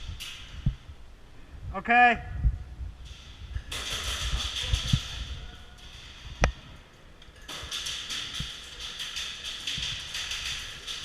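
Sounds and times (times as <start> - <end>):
airsoft guns firing: 3.7 - 5.3.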